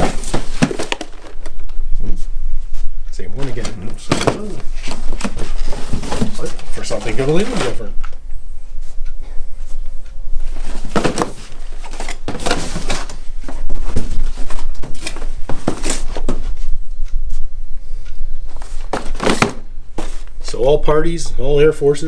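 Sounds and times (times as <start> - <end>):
boxes knocking and clicking: 0.0 - 1.8, 3.3 - 8.2, 10.4 - 16.8, 18.5 - 20.6
boxes rustling: 0.0 - 17.5, 18.4 - 21.3.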